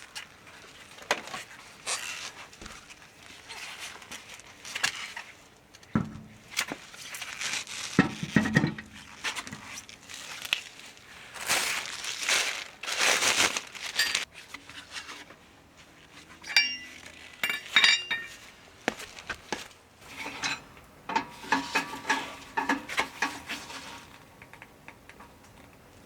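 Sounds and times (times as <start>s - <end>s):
rustling: 0.0s - 24.3s
metal objects clinking and rattling: 13.8s - 14.3s, 16.4s - 18.5s.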